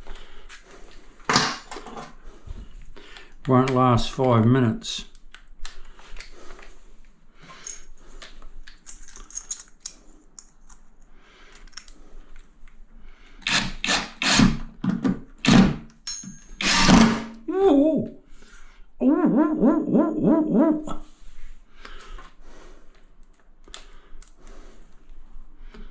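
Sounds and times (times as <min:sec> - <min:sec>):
metallic clicks of screws and fittings: 0:07.5 - 0:12.8, 0:15.9 - 0:17.0.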